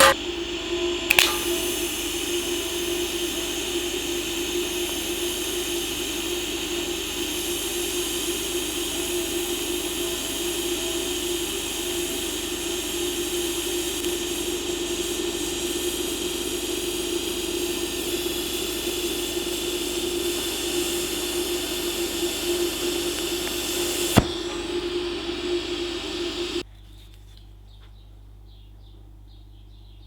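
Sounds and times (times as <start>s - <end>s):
welding arc hissing and humming: 0.0s - 26.6s.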